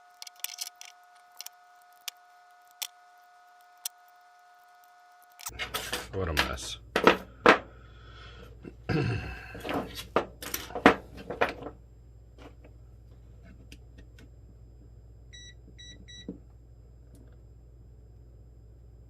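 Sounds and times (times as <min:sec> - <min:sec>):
battery parts clattering: 0:00.1 - 0:02.1.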